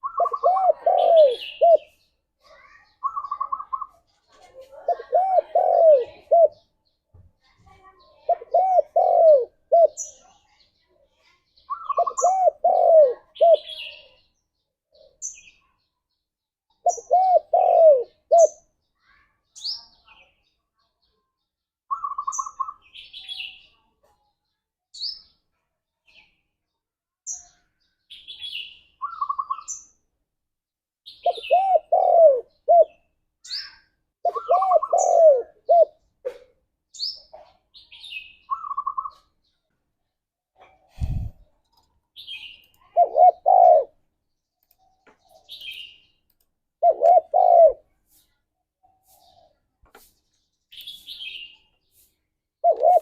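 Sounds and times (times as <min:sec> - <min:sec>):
dove cooing: 0:00.0 - 0:01.9, 0:04.8 - 0:06.6, 0:08.3 - 0:10.0, 0:11.8 - 0:13.7, 0:16.8 - 0:18.6, 0:31.2 - 0:33.0, 0:34.2 - 0:36.4, 0:42.9 - 0:44.0, 0:46.8 - 0:47.8, 0:52.6 - 0:53.0
small birds chirping: 0:00.0 - 0:30.3, 0:31.0 - 0:53.0.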